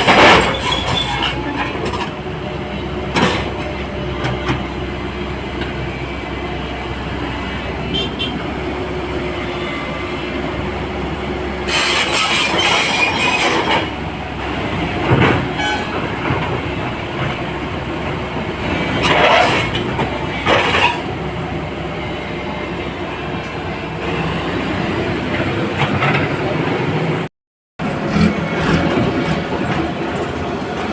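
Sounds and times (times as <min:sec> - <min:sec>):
excavator engine droning: 0:00.0 - 0:30.9
hydraulics squealing and hissing: 0:00.2 - 0:02.1, 0:11.6 - 0:14.0, 0:18.8 - 0:21.2.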